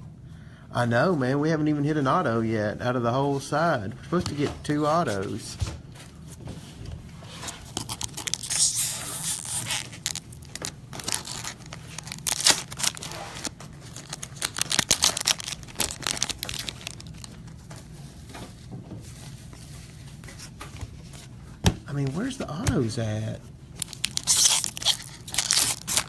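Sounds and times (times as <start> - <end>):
cards being handled: 7.4 - 18.0, 23.8 - 26.0
card wrappers tearing and crinkling: 7.6 - 17.6, 23.8 - 26.0.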